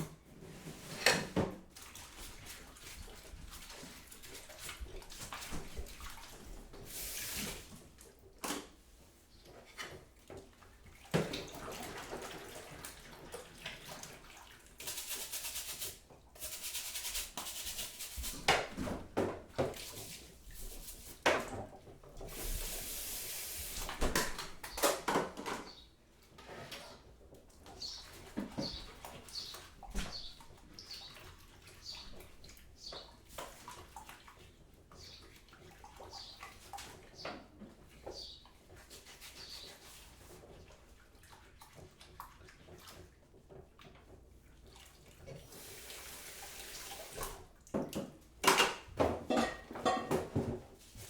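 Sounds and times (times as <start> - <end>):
knocks and clatter of kitchenware: 0.0 - 1.8, 17.2 - 20.0, 21.2 - 22.2, 23.9 - 25.9, 47.7 - 50.8
kitchen tap running: 14.6 - 25.2, 45.3 - 50.4.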